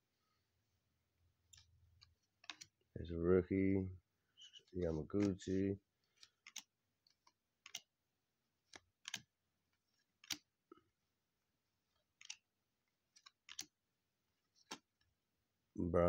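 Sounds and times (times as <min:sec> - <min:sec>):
trading cards flipping clicks: 0:02.4 - 0:02.7, 0:08.7 - 0:09.3, 0:10.2 - 0:10.5, 0:13.2 - 0:13.7.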